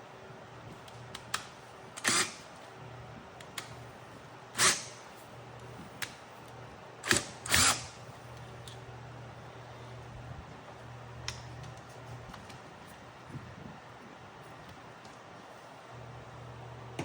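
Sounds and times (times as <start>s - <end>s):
power drill driving screws: 2.0s - 2.4s, 4.6s - 4.9s, 7.0s - 8.0s.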